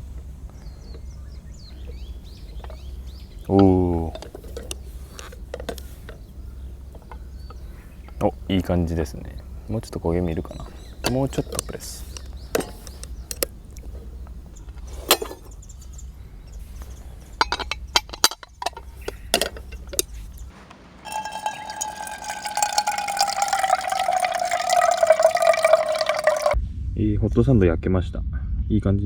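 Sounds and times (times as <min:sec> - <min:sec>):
liquid pouring: 0:00.0 - 0:15.5, 0:21.1 - 0:26.6
metal clicks and clinks: 0:01.7 - 0:08.3, 0:10.3 - 0:16.0, 0:16.7 - 0:20.5, 0:21.1 - 0:26.6.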